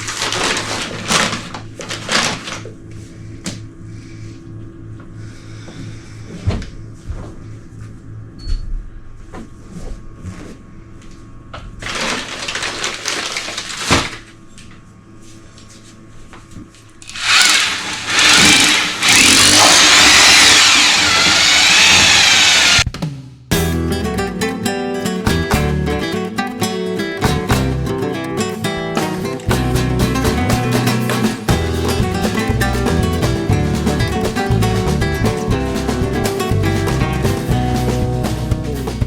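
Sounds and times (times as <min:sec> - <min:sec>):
handheld power tool running: 0:17.0 - 0:22.8.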